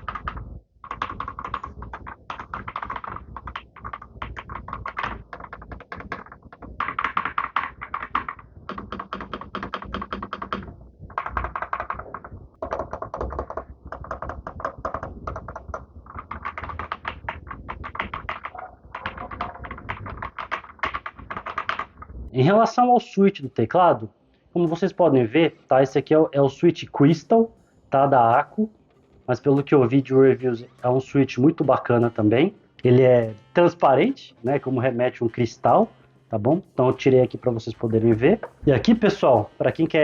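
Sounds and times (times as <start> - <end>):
mechanical keyboard typing: 0.0 - 22.1.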